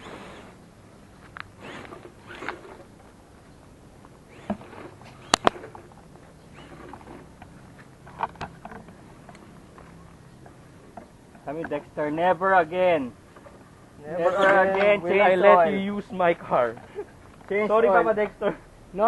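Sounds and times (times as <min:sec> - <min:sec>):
toy truck motor hum: 0:00.0 - 0:00.6, 0:01.6 - 0:02.9, 0:06.5 - 0:07.3.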